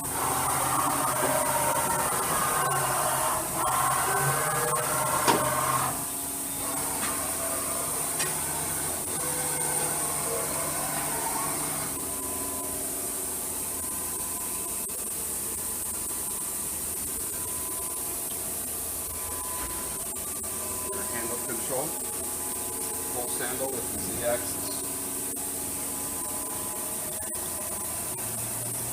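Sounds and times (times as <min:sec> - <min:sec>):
machine hum with whining tones: 0:00.0 - 0:28.9.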